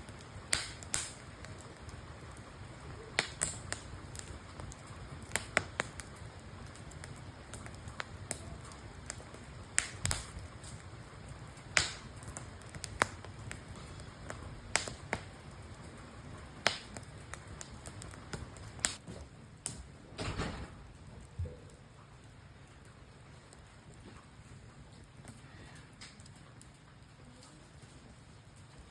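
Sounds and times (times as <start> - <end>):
sharp pops of fire: 0.0 - 24.3
campfire crackling: 0.0 - 28.9.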